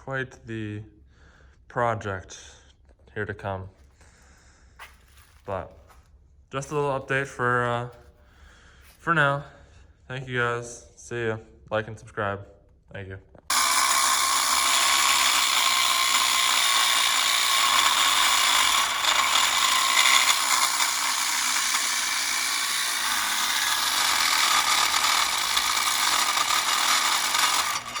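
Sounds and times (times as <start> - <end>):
power tool whining: 13.5 - 28.0.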